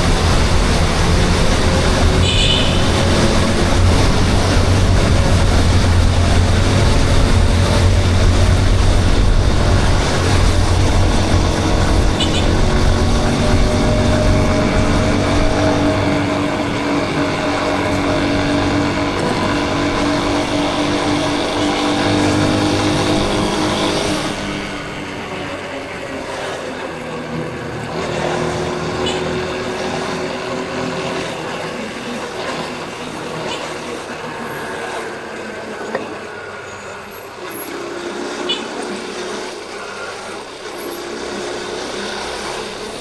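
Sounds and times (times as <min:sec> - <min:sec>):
motorcycle engine running: 0:00.0 - 0:32.5.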